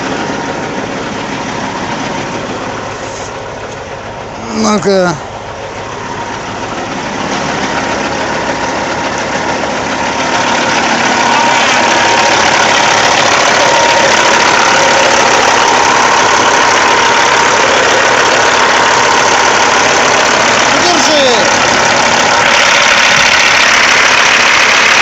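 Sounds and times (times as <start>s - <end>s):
diesel engine running: 0.0s - 25.0s
steady whine: 0.0s - 25.0s.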